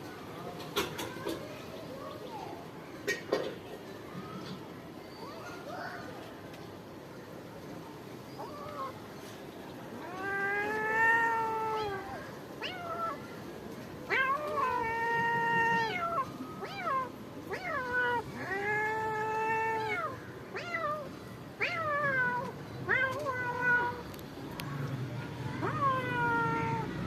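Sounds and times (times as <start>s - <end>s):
cats yowling in a fight: 8.4s - 9.0s, 9.9s - 13.3s, 14.1s - 24.2s, 25.6s - 27.0s.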